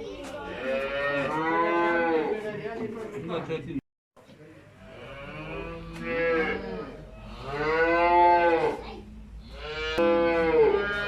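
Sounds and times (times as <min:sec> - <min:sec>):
cattle mooing: 0:04.9 - 0:08.8, 0:09.5 - 0:11.0.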